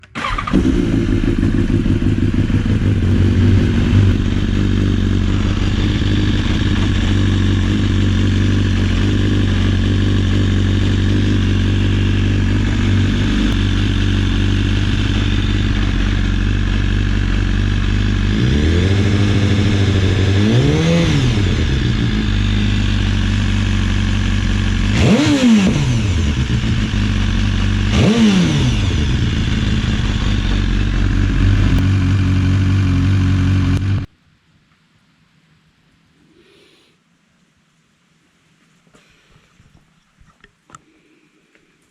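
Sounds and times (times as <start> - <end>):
motorcycle engine idling with rattle: 0.0 - 34.1
motorcycle throttle blips: 0.0 - 34.1.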